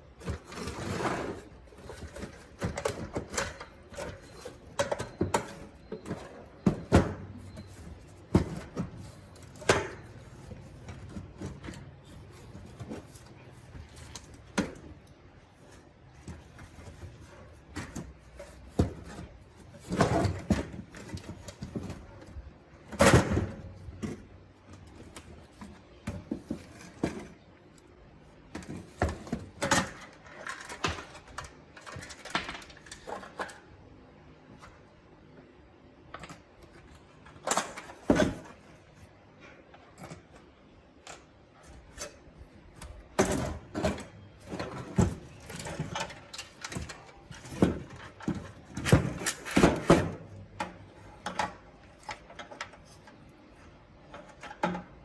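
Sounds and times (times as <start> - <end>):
plastic and metal parts clicking: 28.5 - 33.7.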